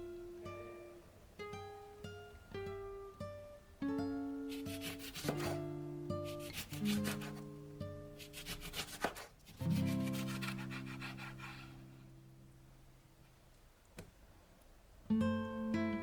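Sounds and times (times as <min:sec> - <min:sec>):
gentle acoustic guitar music: 0:00.0 - 0:08.8, 0:09.5 - 0:13.1, 0:15.0 - 0:16.0
fast rhythmic scraping: 0:04.5 - 0:05.6, 0:06.2 - 0:07.4.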